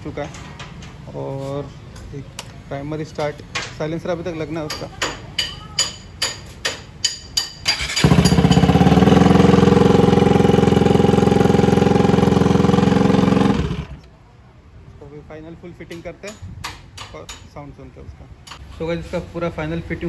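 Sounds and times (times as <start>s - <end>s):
motorcycle engine running loudly: 7.8s - 14.0s.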